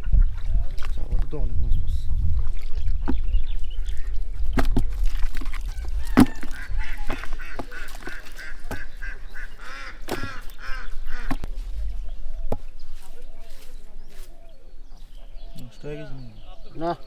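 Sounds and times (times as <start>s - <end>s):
waterfowl nasal calls: 5.7s - 11.4s.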